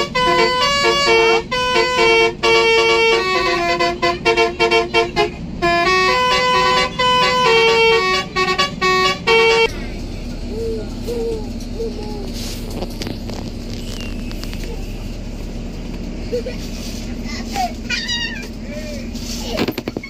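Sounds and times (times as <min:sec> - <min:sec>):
multi-tone bus horn tune: 0:00.0 - 0:09.8.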